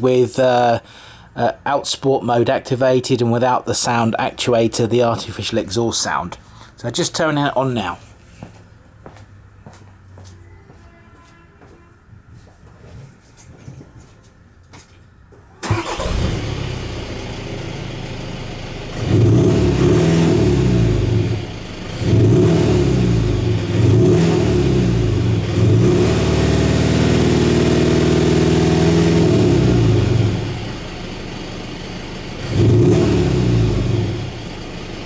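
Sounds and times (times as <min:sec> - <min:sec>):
diesel car engine starting: 0:15.4 - 0:35.0
engine revving: 0:15.6 - 0:35.0.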